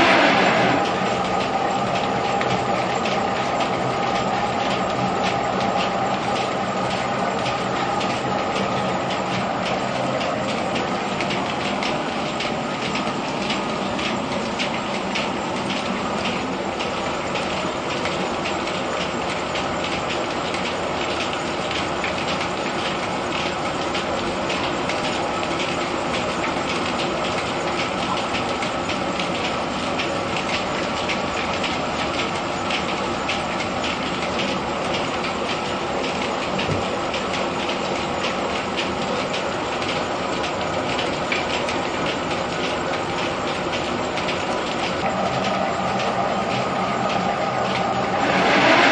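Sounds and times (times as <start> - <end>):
threshing machine droning: 0.0 - 17.9, 42.2 - 48.9.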